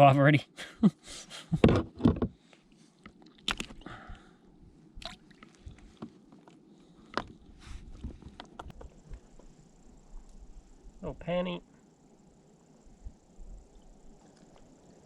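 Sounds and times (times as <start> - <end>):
knocks and clicks on kayak: 1.6 - 2.4
light water splashing: 3.0 - 4.0, 5.0 - 6.1.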